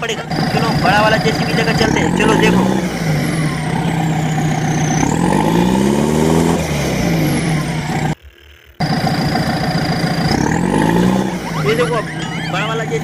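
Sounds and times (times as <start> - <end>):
toy vehicle engine revving: 0.0 - 13.0.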